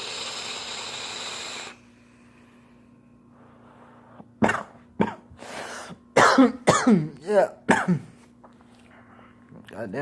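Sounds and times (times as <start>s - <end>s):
vape hiss: 0.0s - 1.8s
person coughing: 4.4s - 8.2s.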